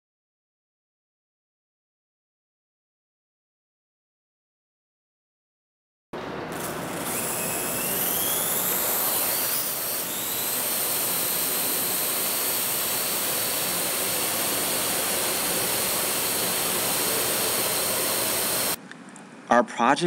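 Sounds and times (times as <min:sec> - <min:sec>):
drone propellers whirring: 0:06.5 - 0:18.8.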